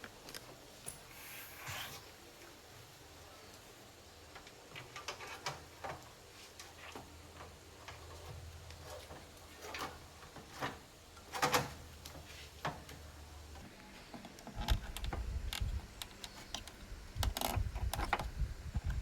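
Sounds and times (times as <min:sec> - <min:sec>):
steady low hum: 0:12.4 - 0:19.0.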